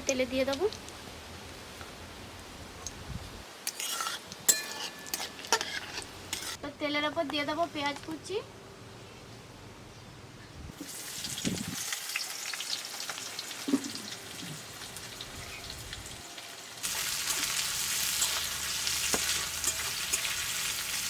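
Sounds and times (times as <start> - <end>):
onion sizzling in oil: 3.6 - 6.6, 10.8 - 21.0.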